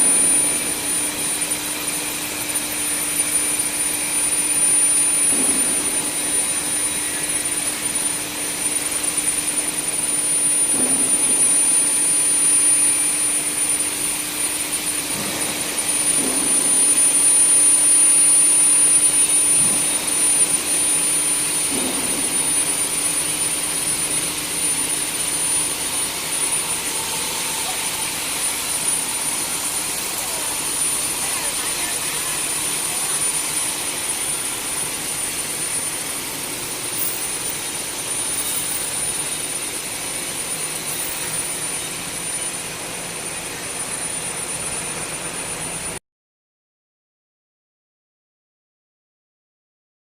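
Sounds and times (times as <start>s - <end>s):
machine hum: 0.0s - 45.9s
high-pitched furnace whine: 0.0s - 46.0s.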